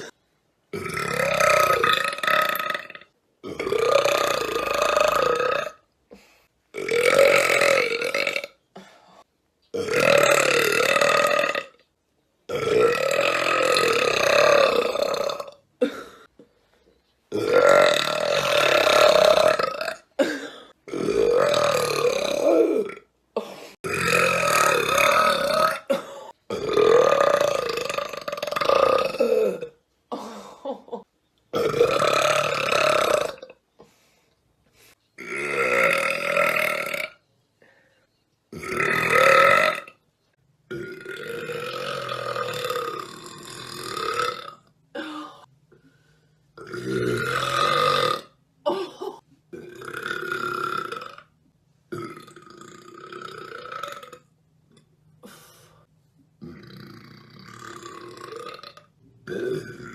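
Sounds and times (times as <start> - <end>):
woman burping loudly: 0.0 - 5.9, 6.7 - 8.9, 9.7 - 11.9, 12.5 - 16.3, 17.3 - 33.6, 35.2 - 37.2, 38.5 - 40.0, 40.7 - 45.5, 46.6 - 51.3, 51.9 - 55.4, 56.4 - 59.9.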